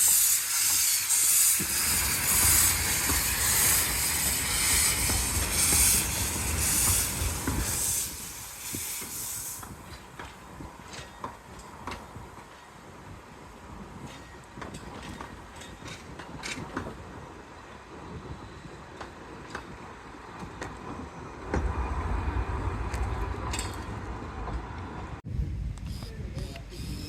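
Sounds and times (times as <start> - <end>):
train pulsing hiss: 0.0 - 13.2.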